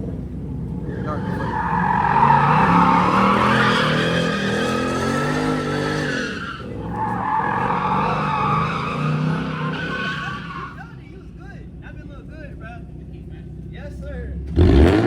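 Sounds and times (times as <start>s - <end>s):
car engine running: 0.0s - 15.0s
tyres squealing: 0.8s - 11.5s.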